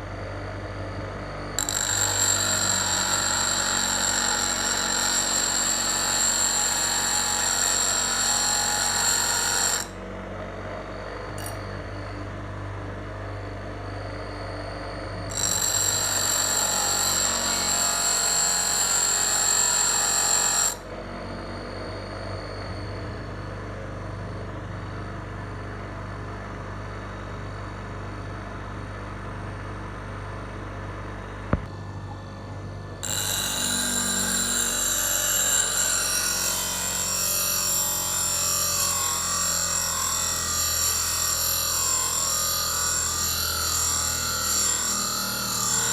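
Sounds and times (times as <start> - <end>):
bench grinder motor hum: 0.0 - 23.6, 31.5 - 45.9
knife grinding whine: 1.5 - 10.0, 10.9 - 24.2, 32.4 - 45.9.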